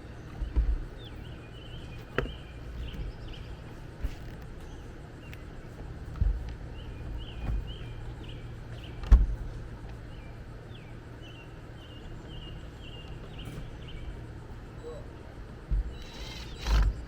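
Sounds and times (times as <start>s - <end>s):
low outdoor rumble: 0.0s - 17.0s
bird chirping: 0.1s - 3.8s, 6.7s - 9.0s, 10.0s - 15.2s.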